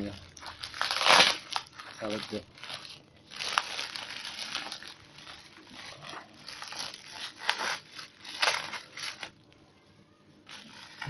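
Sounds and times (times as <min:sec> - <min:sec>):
packaging being torn open: 0:00.0 - 0:09.5, 0:10.5 - 0:11.0.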